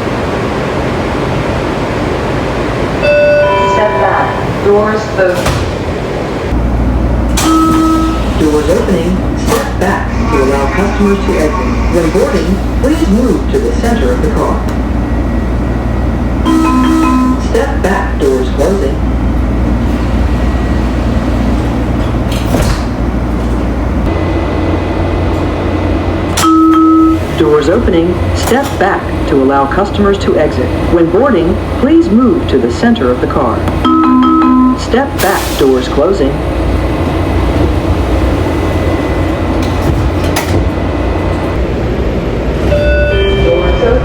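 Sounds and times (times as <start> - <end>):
train car rumble inside: 0.0 - 44.0
door chime tone: 3.0 - 4.6, 7.4 - 8.2, 16.5 - 17.4, 26.4 - 27.2, 33.8 - 34.8, 42.7 - 44.0.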